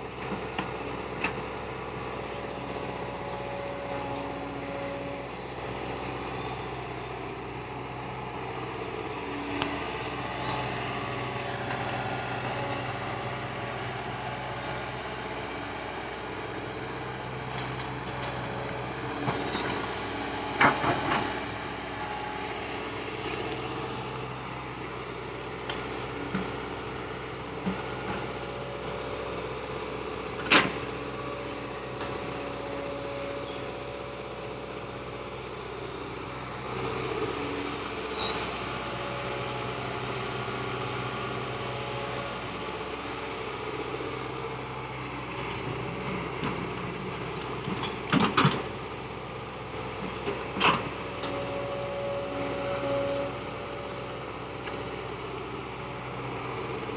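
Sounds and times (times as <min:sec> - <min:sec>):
excavator diesel engine running: 0:00.0 - 0:56.9.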